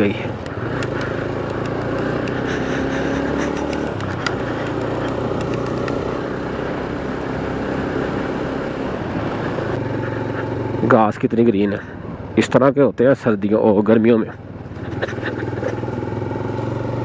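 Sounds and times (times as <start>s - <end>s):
motorcycle engine running: 0.0s - 12.5s, 14.3s - 17.0s
light ticks: 0.4s - 6.1s.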